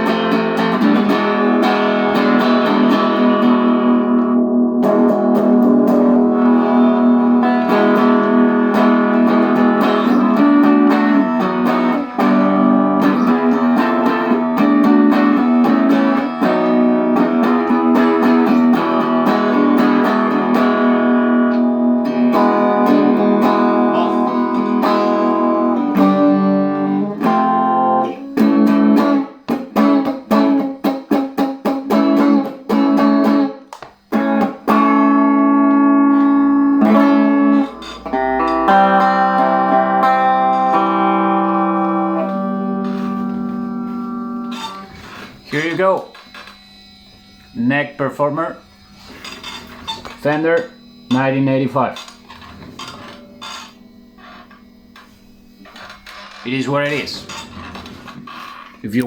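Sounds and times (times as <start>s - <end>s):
electric guitar chords and notes: 0.0s - 58.5s.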